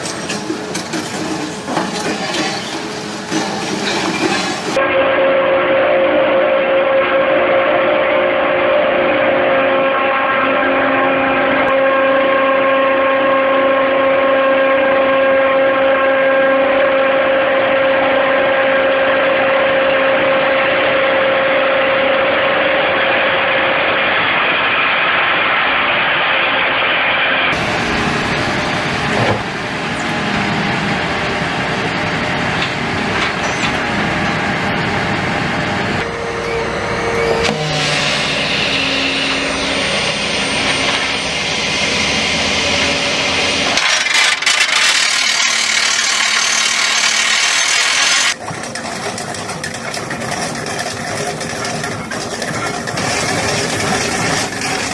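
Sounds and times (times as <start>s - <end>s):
heavy machinery engine running: 27.4s - 54.9s
noisy mechanical running: 27.5s - 54.9s.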